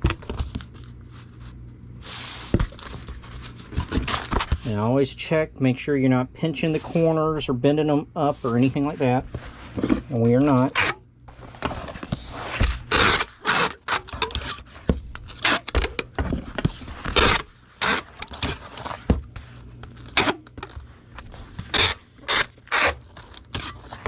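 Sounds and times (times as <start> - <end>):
cardboard box scraping and rubbing: 8.5 - 15.7.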